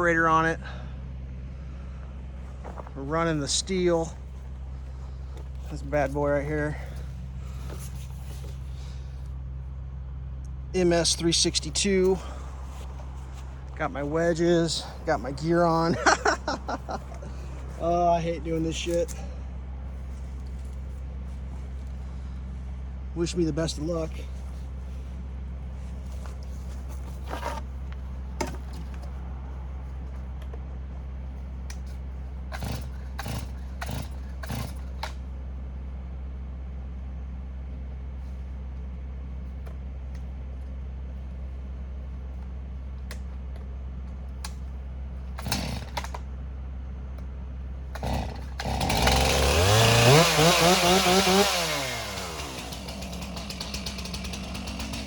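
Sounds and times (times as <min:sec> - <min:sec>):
chainsaw engine revving: 0:05.2 - 0:08.0, 0:10.8 - 0:12.9, 0:13.6 - 0:19.4, 0:32.5 - 0:35.2, 0:45.3 - 0:46.2, 0:47.9 - 0:55.0.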